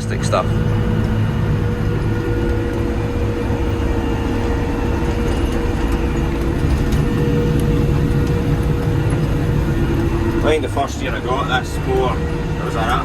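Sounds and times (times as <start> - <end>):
mower engine drone: 0.0 - 13.0.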